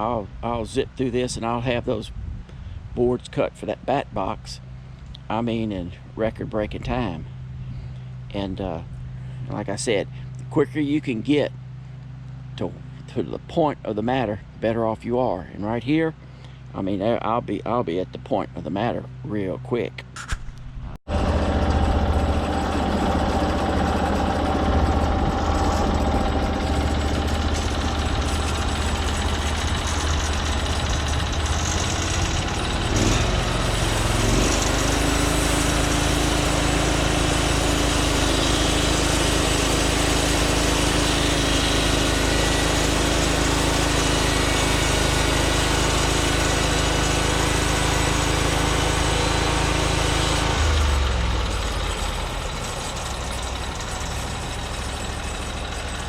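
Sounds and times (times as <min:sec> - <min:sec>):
band saw cutting log: 0:21.1 - 0:56.0
small gasoline engine running: 0:21.1 - 0:56.0.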